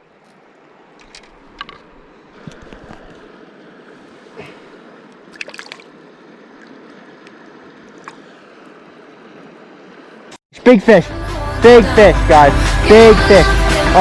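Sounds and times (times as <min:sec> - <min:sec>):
flowing stream water: 0:00.0 - 0:10.4.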